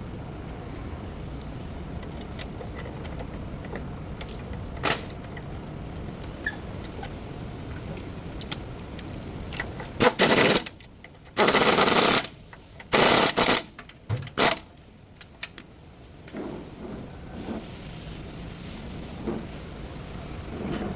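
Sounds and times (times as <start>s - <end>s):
pneumatic impact wrench rattling: 9.6s - 14.7s.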